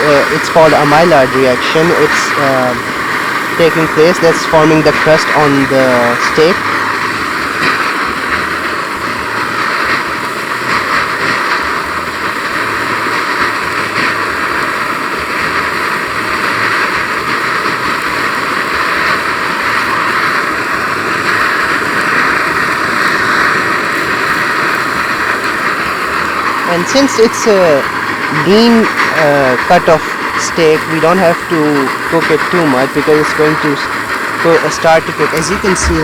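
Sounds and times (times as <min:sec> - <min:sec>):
steak sizzling in a pan: 0:04.7 - 0:26.7.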